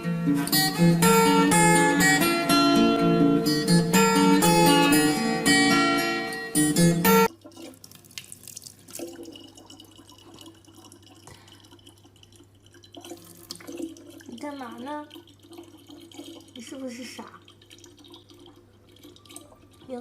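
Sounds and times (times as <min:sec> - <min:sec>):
plucked acoustic guitar music: 0:00.0 - 0:07.5.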